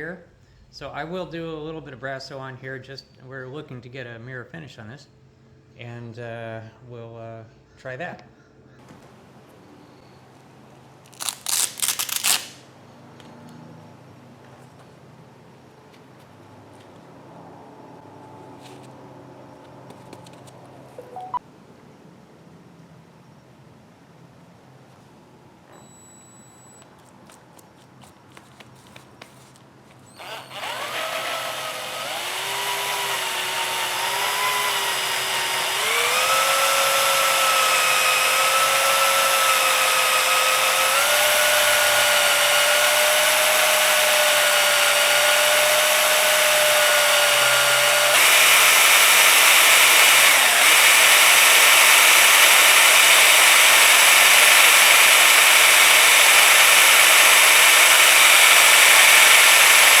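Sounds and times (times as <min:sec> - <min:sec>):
power drill polishing pad whirring: 0:30.0 - 1:00.0.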